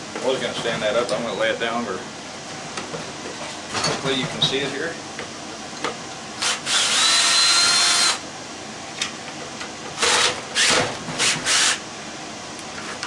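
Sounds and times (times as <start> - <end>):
power drill whining: 6.4 - 8.2, 10.0 - 11.8.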